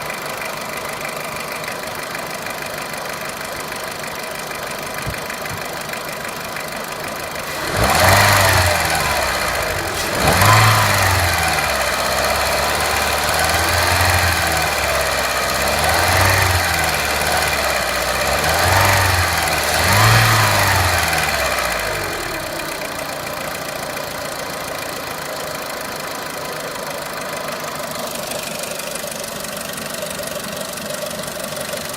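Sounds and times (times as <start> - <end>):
car engine idling and revving: 0.0 - 31.9.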